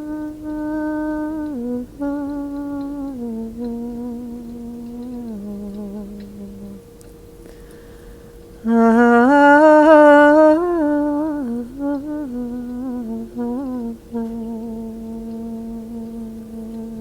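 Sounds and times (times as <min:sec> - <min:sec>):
woman singing wordless melody: 0:00.0 - 0:17.0.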